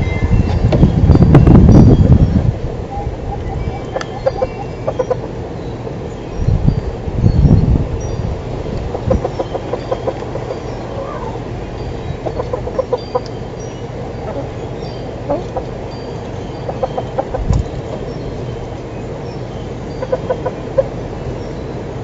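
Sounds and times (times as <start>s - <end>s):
steady background noise: 0.0s - 22.0s
chickens clucking: 2.9s - 5.4s, 8.7s - 18.9s, 19.9s - 21.0s.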